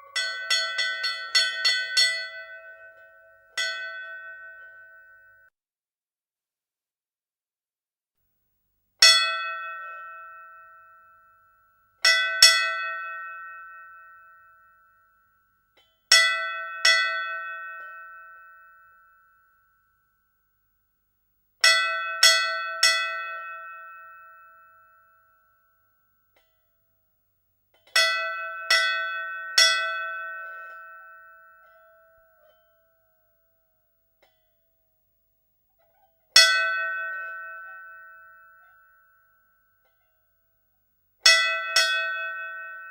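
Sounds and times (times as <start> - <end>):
temple bell ringing: 0.0 - 5.5, 9.0 - 20.2, 21.6 - 26.5, 27.9 - 33.4, 36.4 - 40.2, 41.2 - 42.9.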